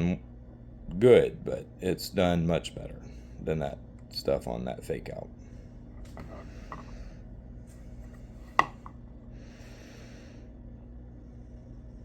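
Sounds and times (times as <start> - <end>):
low electrical hum: 0.0 - 12.0
knife scraping: 6.0 - 6.9.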